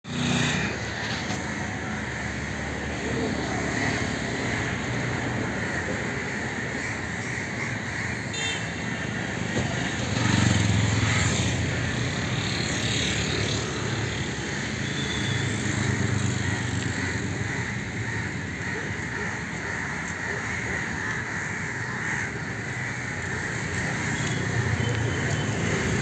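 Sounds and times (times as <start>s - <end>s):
traffic noise: 0.0s - 26.0s
vehicle passing: 22.6s - 26.0s.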